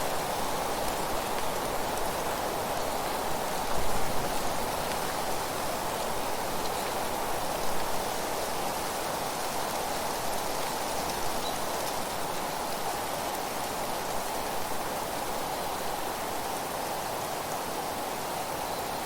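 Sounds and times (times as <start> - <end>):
wind rustling leaves: 0.0 - 19.0.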